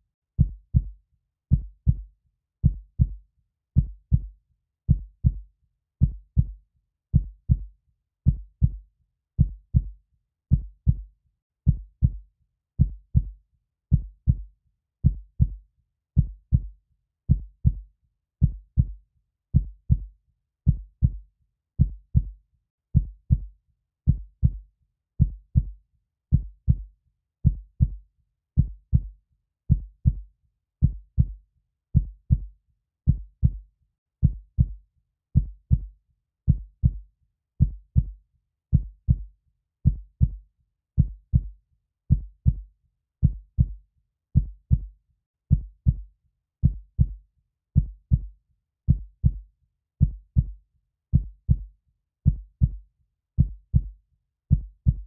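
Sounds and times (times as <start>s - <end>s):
heartbeat thumps: 25.2s - 25.7s, 26.3s - 26.8s, 30.8s - 31.4s, 35.4s - 35.9s, 36.5s - 37.0s, 37.6s - 38.1s, 42.1s - 42.6s, 43.2s - 43.8s, 44.4s - 44.9s, 45.5s - 46.0s, 46.6s - 47.2s, 47.8s - 48.3s, 48.9s - 49.4s, 50.0s - 50.6s, 51.2s - 51.7s, 52.3s - 52.8s, 53.4s - 53.9s, 54.5s - 55.0s.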